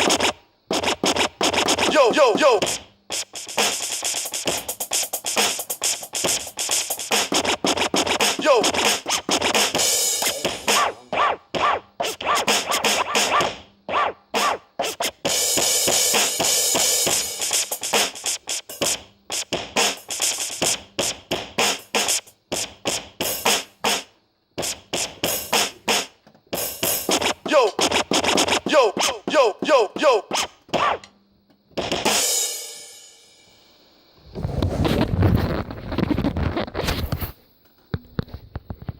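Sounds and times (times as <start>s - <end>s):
fast choppy drum beat: 0.0s - 13.6s, 14.4s - 24.0s, 24.6s - 30.4s
record scratching: 0.0s - 15.2s, 27.0s - 31.0s, 34.4s - 37.3s.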